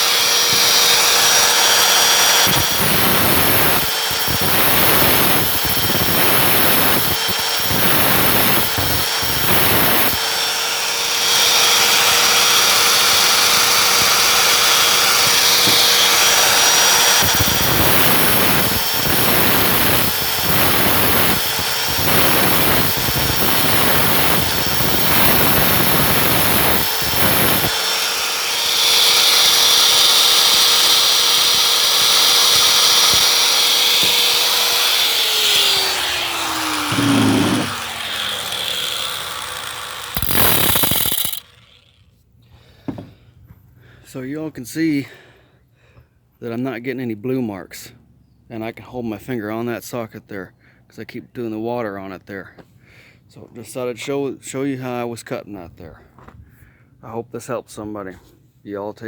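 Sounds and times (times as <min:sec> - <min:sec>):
angle grinder motor whining: 0:00.0 - 0:42.0
grinding wheel cutting metal: 0:00.0 - 0:42.0.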